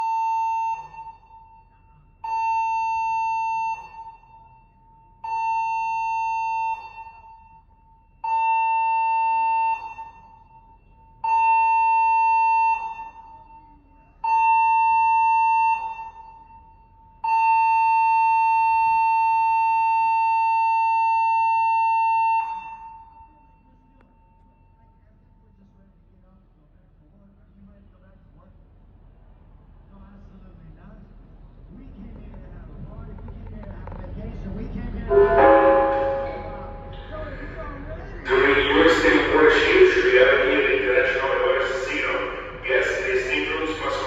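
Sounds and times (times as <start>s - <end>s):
ship alarm blasts: 0.0s - 13.6s, 14.2s - 24.4s, 35.1s - 44.0s.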